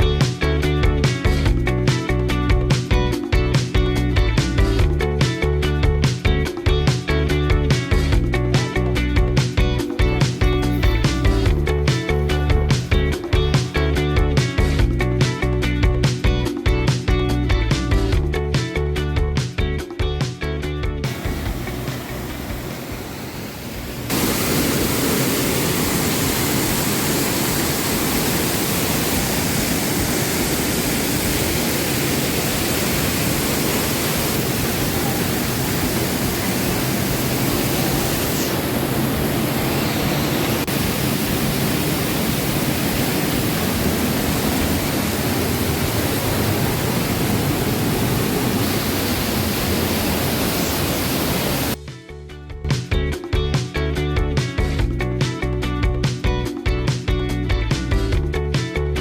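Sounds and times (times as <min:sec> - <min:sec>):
waterfall rushing: 0:10.0 - 0:13.9, 0:21.0 - 0:51.8.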